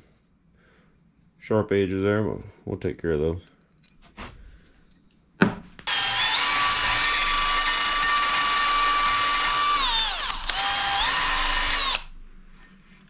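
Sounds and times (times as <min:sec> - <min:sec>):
power drill whining: 0:05.8 - 0:12.2.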